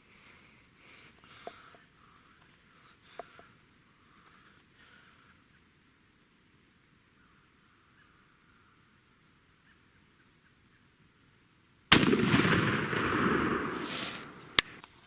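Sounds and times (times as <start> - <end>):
shotgun blast with long echo: 11.9 - 14.7.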